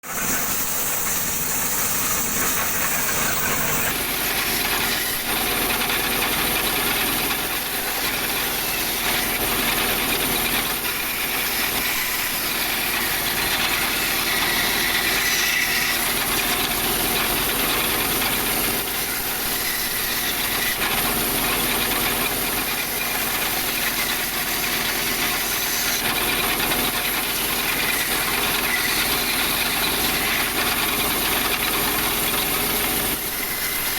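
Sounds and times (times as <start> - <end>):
woodworking machinery hissing: 0.0 - 5.2.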